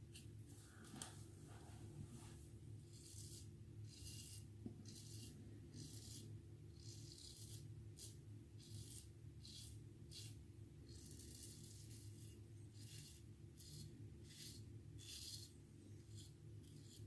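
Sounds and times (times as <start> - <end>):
razor scraping stubble: 6.8 - 17.0.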